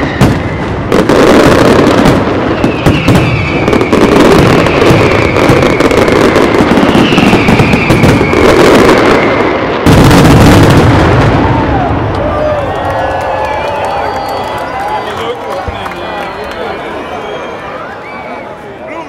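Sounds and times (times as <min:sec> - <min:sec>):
falling firework whistles: 0:00.0 - 0:11.9, 0:13.4 - 0:15.2, 0:16.3 - 0:18.6
firework bang: 0:00.0 - 0:12.6
fireworks crackling and popping: 0:00.0 - 0:18.2.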